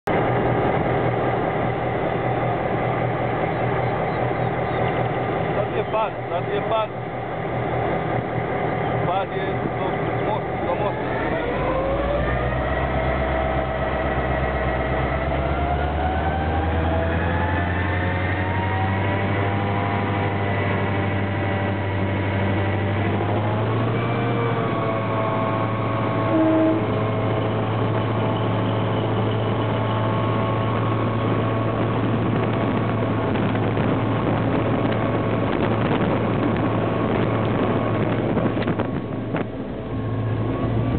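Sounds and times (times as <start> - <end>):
diesel locomotive engine running: 0.0 - 40.9
short loud tone: 26.2 - 27.0.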